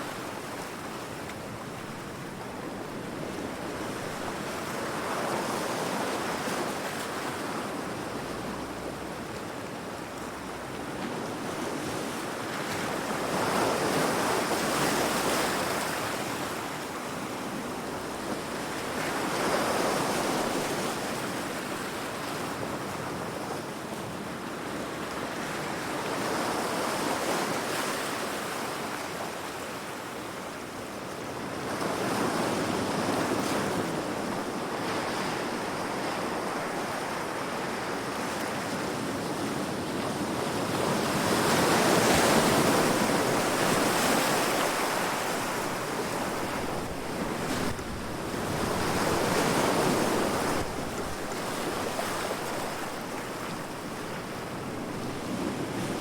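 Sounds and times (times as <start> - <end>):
ocean waves breaking on rocks: 31.1 - 56.0.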